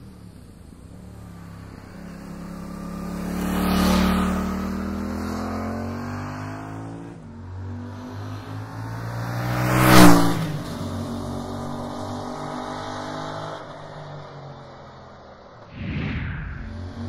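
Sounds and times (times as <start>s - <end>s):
motorcycle engine revving: 0.6s - 8.5s, 16.5s - 17.0s.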